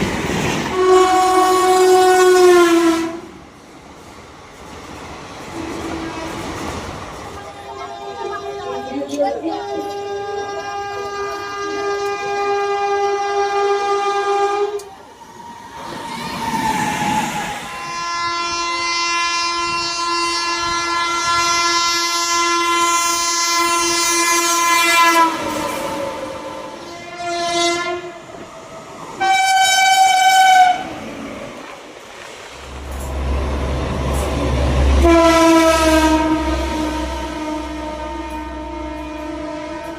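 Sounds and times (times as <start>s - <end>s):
rushing train noise: 0.0s - 39.9s
locomotive horn blasts: 0.7s - 3.4s, 5.5s - 6.7s, 7.7s - 14.9s, 17.7s - 28.2s, 29.2s - 31.0s, 33.0s - 39.9s.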